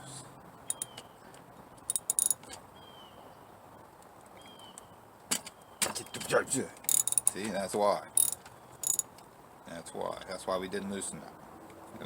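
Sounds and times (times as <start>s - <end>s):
faint bird chirps: 0.6s - 3.5s, 4.4s - 6.4s
wrench clicking on metal bolt: 0.7s - 1.0s, 1.9s - 2.5s, 6.9s - 7.4s, 8.2s - 9.1s.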